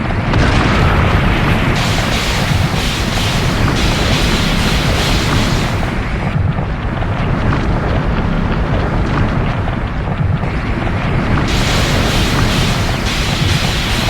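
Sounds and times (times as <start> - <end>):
explosion-like rumble with hiss: 0.3 - 6.6, 11.4 - 14.0.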